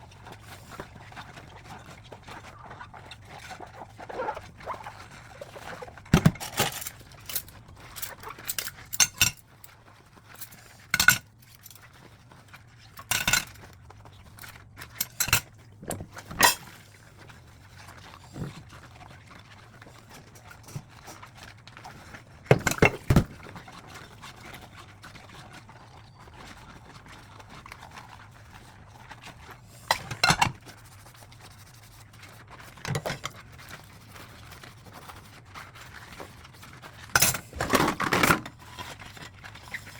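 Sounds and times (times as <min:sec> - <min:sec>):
dishes and cutlery clinking: 0:05.4 - 0:09.7, 0:10.3 - 0:11.8, 0:13.0 - 0:13.7, 0:15.0 - 0:16.8, 0:22.5 - 0:23.4, 0:29.8 - 0:30.6, 0:32.9 - 0:33.4, 0:37.2 - 0:38.9.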